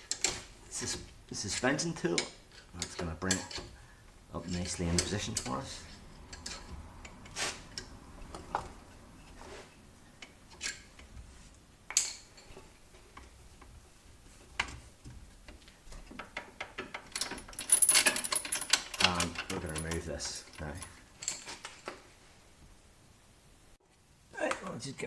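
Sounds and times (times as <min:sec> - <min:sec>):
metal tools clinking: 0:00.0 - 0:03.8, 0:04.4 - 0:06.8, 0:15.9 - 0:22.0.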